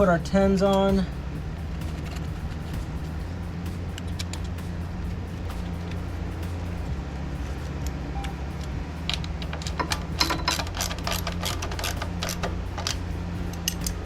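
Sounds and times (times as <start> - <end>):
steady low hum: 0.0 - 14.0
socket ratchet clicking: 8.6 - 14.0.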